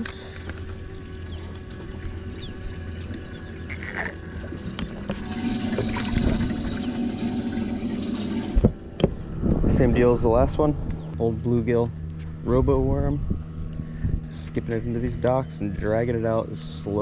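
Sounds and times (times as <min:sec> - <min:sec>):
low motor hum: 0:00.0 - 0:17.0
water gurgling and trickling: 0:02.6 - 0:08.7.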